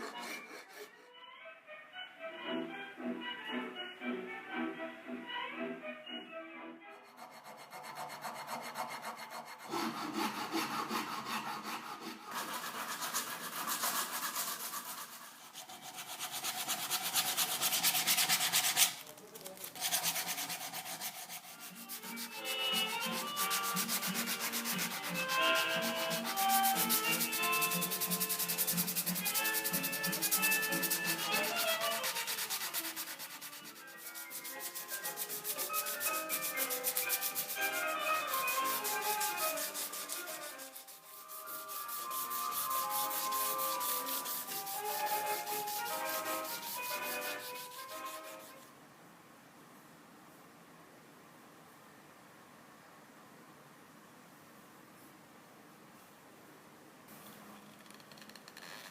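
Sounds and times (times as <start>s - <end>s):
abrasive sanding: 0.0s - 1.1s, 7.1s - 48.7s.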